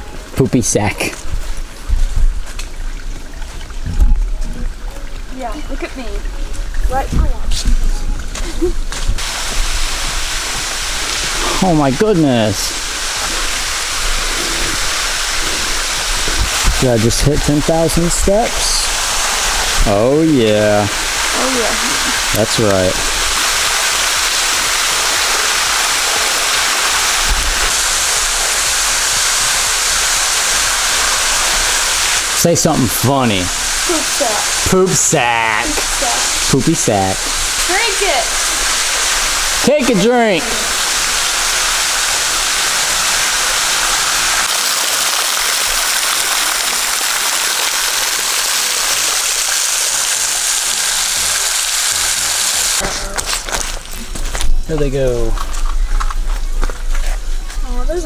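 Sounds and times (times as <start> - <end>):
waterfall rushing: 8.6 - 52.8.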